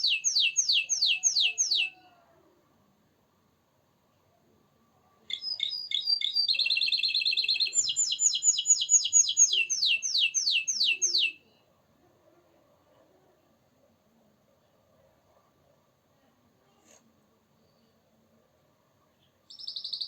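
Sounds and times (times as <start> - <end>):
canary singing: 0.0 - 2.1, 5.3 - 11.6, 19.5 - 20.0.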